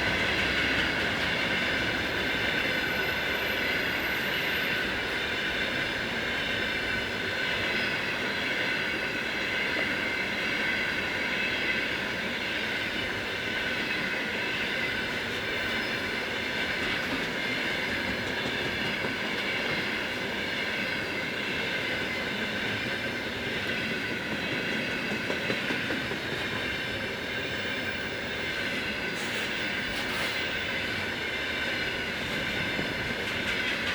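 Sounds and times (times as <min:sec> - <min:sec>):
freight train wheels rolling on rail: 0:00.0 - 0:33.9
high whine from train wheels: 0:00.0 - 0:33.9.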